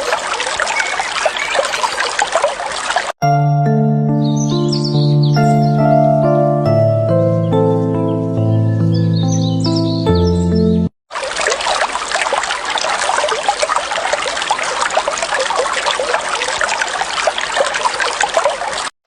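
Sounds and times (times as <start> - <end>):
water trickling and babbling: 0.0 - 3.2, 11.1 - 19.0
soft music chords: 3.2 - 10.9.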